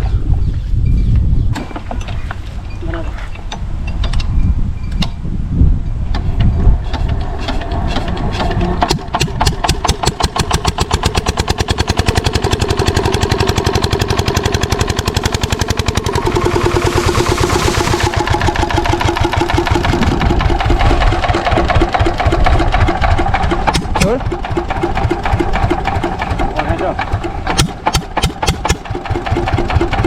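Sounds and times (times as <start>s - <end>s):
diesel engine starting up: 6.1s - 30.0s.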